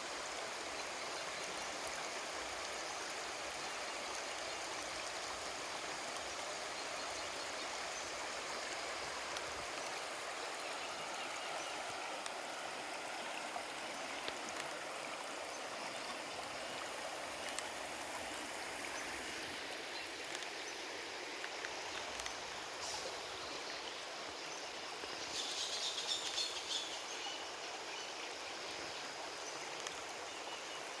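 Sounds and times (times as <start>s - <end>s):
river water rushing over rocks: 0.1s - 24.4s.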